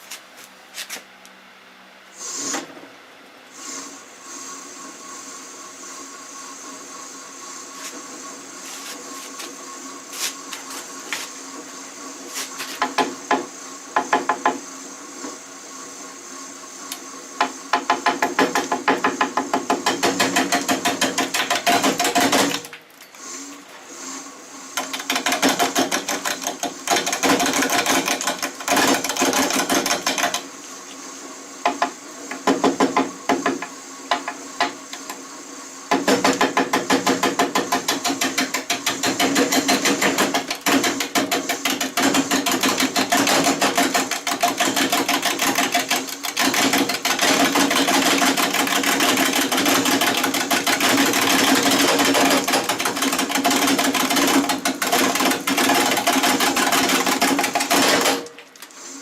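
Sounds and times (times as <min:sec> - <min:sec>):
lathe tool knocking on wood: 0:12.7 - 0:14.6, 0:17.4 - 0:22.6, 0:31.6 - 0:34.8, 0:35.9 - 0:58.1.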